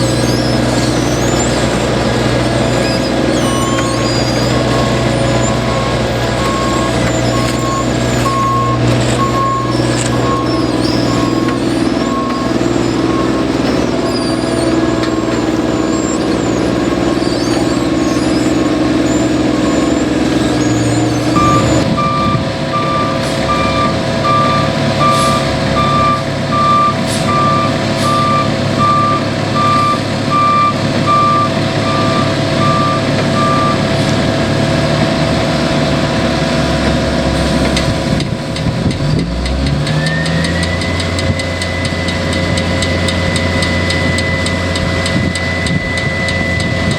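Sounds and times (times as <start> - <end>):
reversing alarm beeping: 0.0 - 34.6, 39.9 - 46.9
diesel engine running: 0.0 - 46.9.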